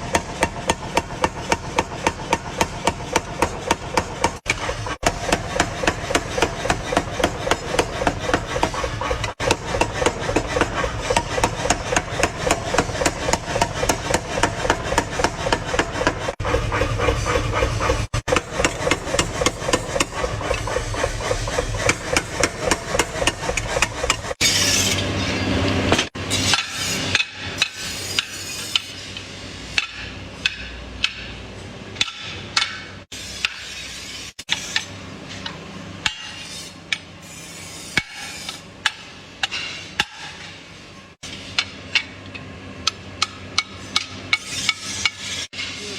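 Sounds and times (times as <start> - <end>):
hammer striking steel: 0.0 - 16.2, 29.7 - 31.4, 32.0 - 33.8, 36.0 - 37.1, 38.0 - 40.5, 42.8 - 45.9.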